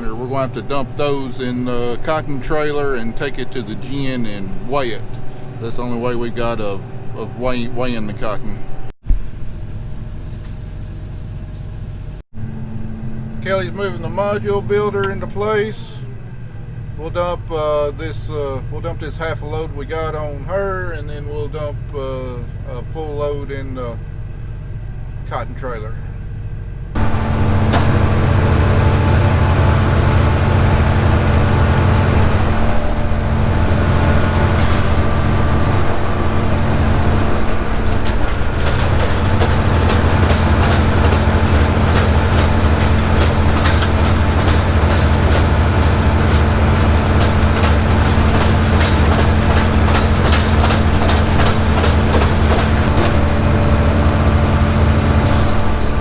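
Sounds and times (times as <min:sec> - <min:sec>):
diesel engine running: 0:00.0 - 0:56.0
fast dense rattle: 0:27.0 - 0:56.0.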